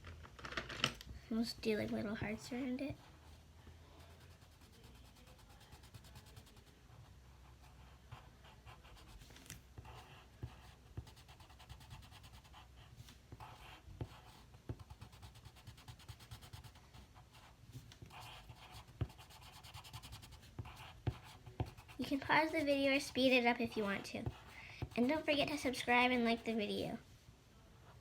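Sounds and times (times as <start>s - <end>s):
pencil scratching on paper: 4.0s - 26.6s.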